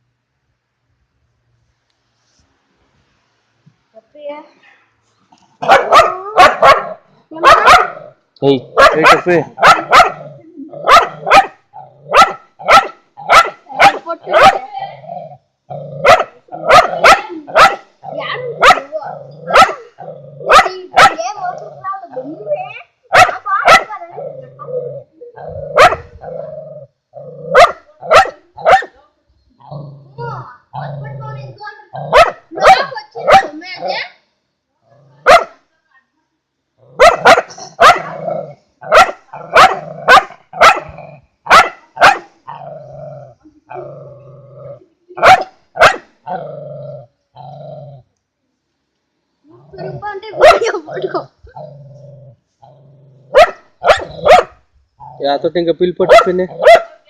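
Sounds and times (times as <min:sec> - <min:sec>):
dog barking: 0:05.6 - 0:08.1, 0:08.7 - 0:14.7, 0:16.0 - 0:17.9, 0:18.6 - 0:21.3, 0:23.1 - 0:24.0, 0:25.7 - 0:26.1, 0:27.5 - 0:29.0, 0:32.0 - 0:33.6, 0:35.2 - 0:35.6, 0:37.0 - 0:42.4, 0:45.2 - 0:46.2, 0:50.4 - 0:50.8, 0:53.3 - 0:54.6, 0:56.0 - 0:57.0
dog growling: 0:05.6 - 0:12.3, 0:14.3 - 0:22.5, 0:24.0 - 0:28.2, 0:29.6 - 0:32.7, 0:36.8 - 0:41.2, 0:42.5 - 0:45.3, 0:46.2 - 0:48.1, 0:49.6 - 0:55.4, 0:56.0 - 0:56.8.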